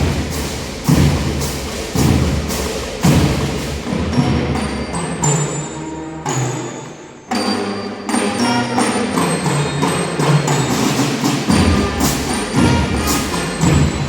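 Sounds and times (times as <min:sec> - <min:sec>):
deep low drum: 0:00.0 - 0:04.6
percussion band music: 0:00.0 - 0:14.0
bell-like tones: 0:03.9 - 0:14.0.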